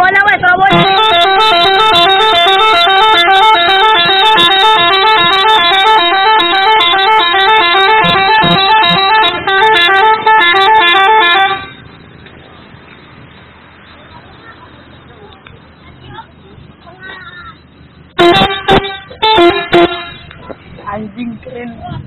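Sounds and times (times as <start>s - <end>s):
bus musical horn melody: 0.6s - 11.9s, 18.1s - 20.4s.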